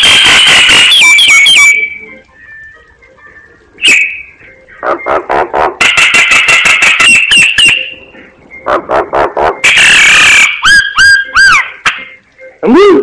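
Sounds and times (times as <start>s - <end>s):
bird whistled notes: 0.0s - 2.9s, 3.8s - 4.4s, 6.0s - 8.1s, 9.6s - 12.1s.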